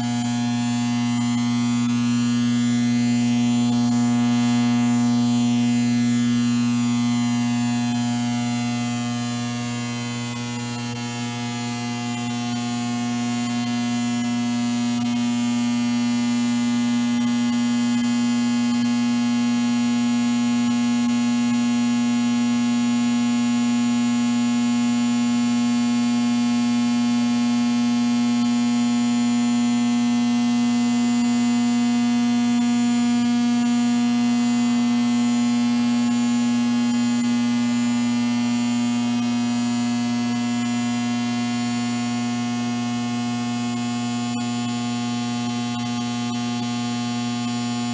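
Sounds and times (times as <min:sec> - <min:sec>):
electrical buzz with low hum: 0:00.0 - 0:47.9.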